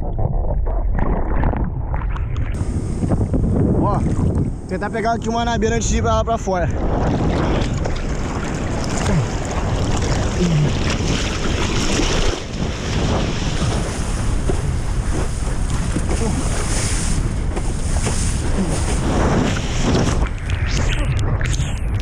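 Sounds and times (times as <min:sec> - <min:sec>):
wind buffeting microphone: 0:00.0 - 0:22.0
surf breaking: 0:02.5 - 0:22.0
water sloshing: 0:06.7 - 0:22.0.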